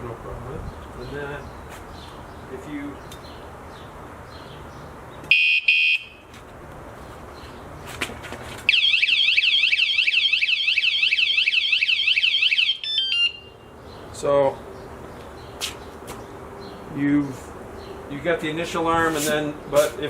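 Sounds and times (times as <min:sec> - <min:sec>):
motorcycle alarm warning beeps: 0:05.3 - 0:06.3, 0:08.7 - 0:13.8
fast warbling alarm siren: 0:08.7 - 0:13.6.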